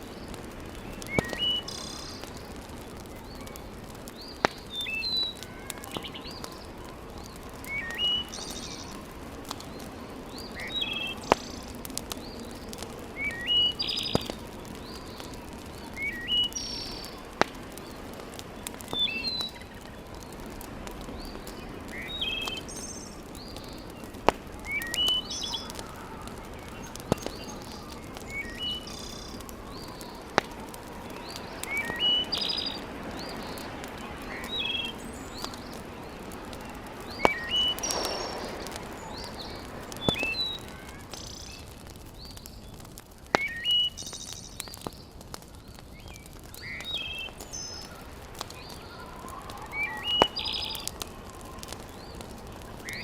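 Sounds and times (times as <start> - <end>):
wood fire crackling: 0.0 - 53.0
bird chirping: 21.2 - 24.0, 31.2 - 36.4, 37.0 - 41.6.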